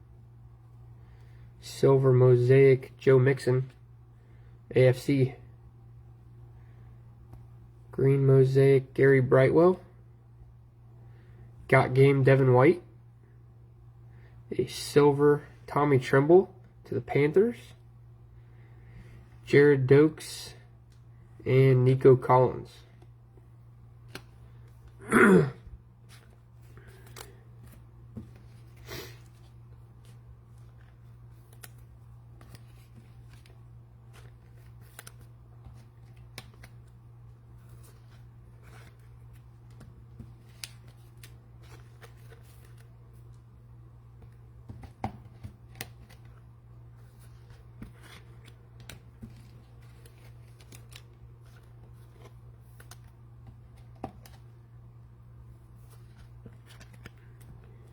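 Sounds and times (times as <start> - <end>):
trading cards clicking and rustling: 26.1 - 37.0, 37.6 - 43.4, 44.2 - 46.4, 47.0 - 54.5, 55.8 - 57.9.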